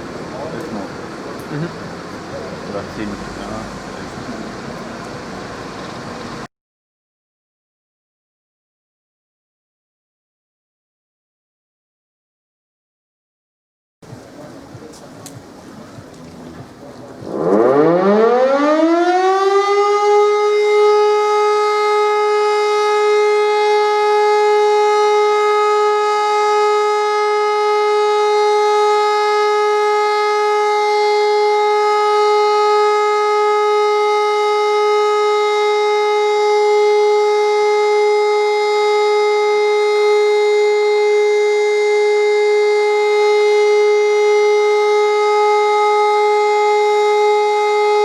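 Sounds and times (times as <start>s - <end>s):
electric rotor siren: 14.1s - 48.0s.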